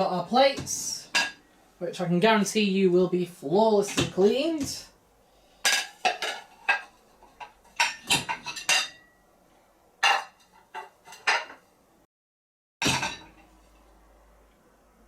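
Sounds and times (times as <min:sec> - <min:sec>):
dinner plates clattering: 0:05.6 - 0:09.2, 0:10.0 - 0:11.7, 0:12.8 - 0:13.8.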